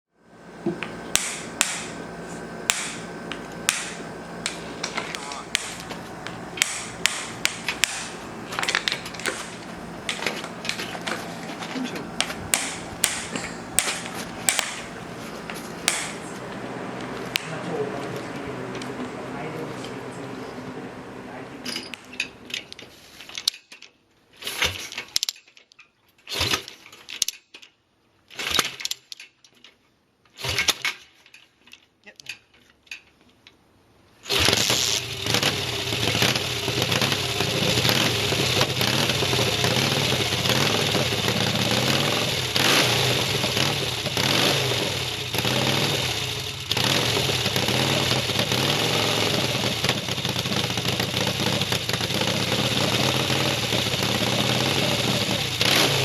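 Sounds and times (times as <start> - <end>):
motorcycle engine idling: 0.3 - 22.4, 34.6 - 56.0.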